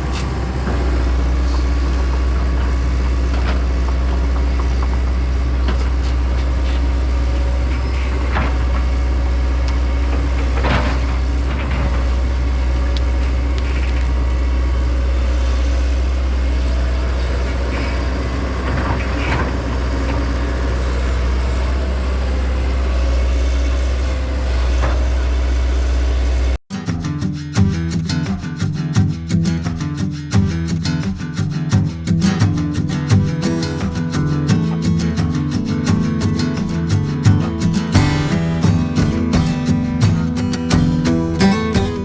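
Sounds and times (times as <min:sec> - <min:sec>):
heavy diesel machine running: 0:32.0 - 0:42.0.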